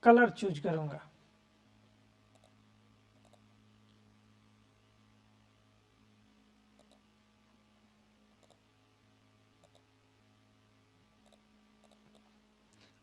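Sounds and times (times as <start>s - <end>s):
low electrical hum: 0.0s - 13.0s
computer mouse clicks: 2.3s - 2.6s, 3.2s - 3.4s, 6.8s - 7.0s, 8.4s - 8.6s, 9.6s - 9.9s, 11.2s - 12.8s.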